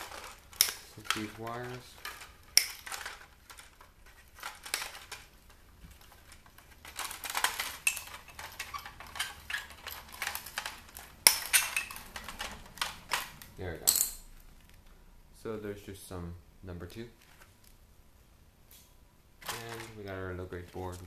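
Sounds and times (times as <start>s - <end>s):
small parts clicking and rattling: 0.0s - 15.0s, 18.7s - 21.0s
sharp metal clink: 13.8s - 14.3s.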